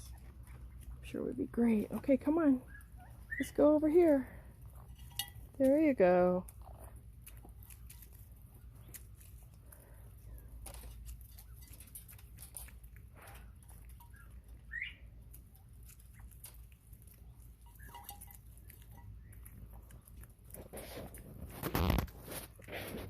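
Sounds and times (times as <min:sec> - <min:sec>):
quail pecking and scratching: 0:00.0 - 0:23.0.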